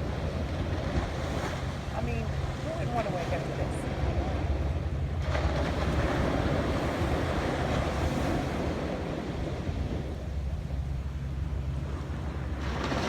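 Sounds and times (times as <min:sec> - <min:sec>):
wind rumbling on microphone: 0:00.0 - 0:13.0
surf breaking on beach: 0:12.3 - 0:13.0.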